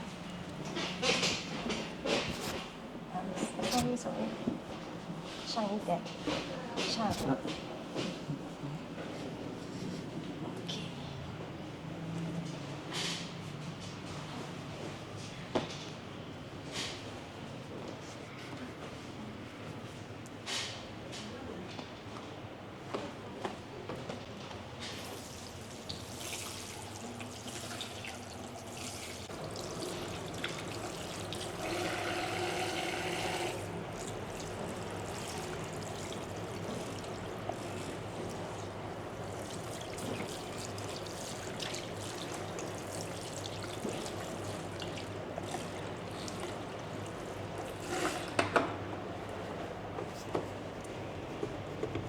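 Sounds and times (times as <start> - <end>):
running water splashing: 25.1 - 32.4, 33.2 - 47.9.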